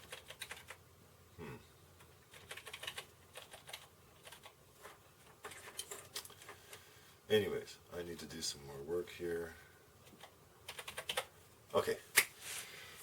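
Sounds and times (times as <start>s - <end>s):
computer keyboard clicks: 0.0s - 0.8s, 2.3s - 4.5s, 10.1s - 11.3s.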